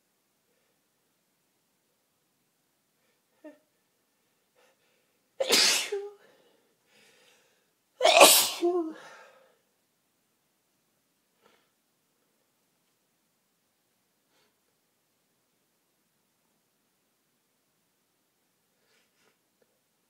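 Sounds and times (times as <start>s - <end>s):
person sneezing: 5.4s - 6.3s, 8.0s - 9.4s.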